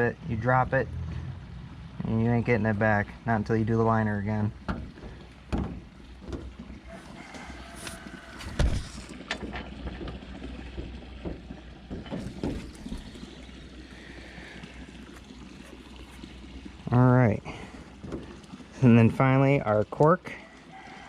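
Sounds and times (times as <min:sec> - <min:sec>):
thump: 0:04.7 - 0:06.5, 0:08.4 - 0:09.0
light knocks and rubs: 0:04.7 - 0:13.3.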